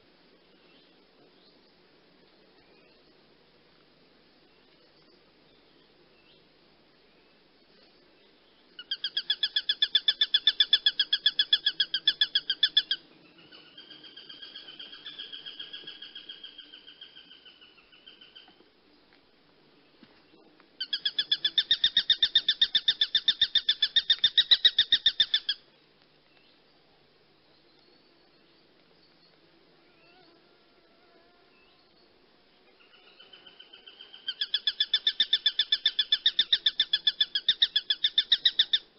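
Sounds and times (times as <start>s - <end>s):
bird chattering shrilly: 8.8s - 13.0s, 20.8s - 25.6s, 34.3s - 38.8s.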